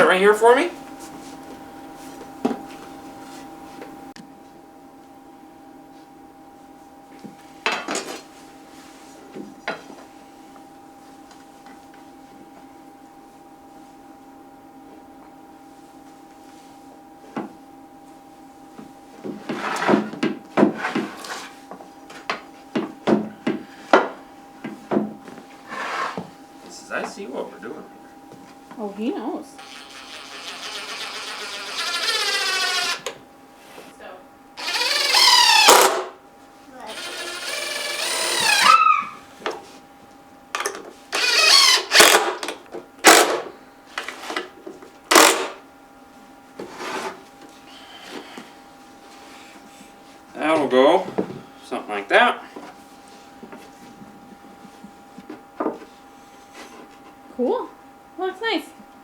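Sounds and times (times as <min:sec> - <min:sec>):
boards scraping together: 0:19.4 - 0:20.1, 0:20.7 - 0:21.6, 0:25.7 - 0:26.3, 0:46.6 - 0:47.2
cordless drill motor whining: 0:29.5 - 0:33.2, 0:34.6 - 0:36.1, 0:36.9 - 0:39.2, 0:41.1 - 0:42.4, 0:43.0 - 0:43.4, 0:45.1 - 0:45.6.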